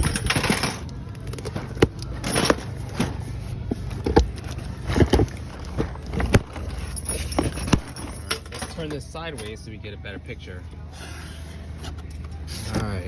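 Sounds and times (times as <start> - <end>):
packaged toy cars clacking: 0.0 - 8.9.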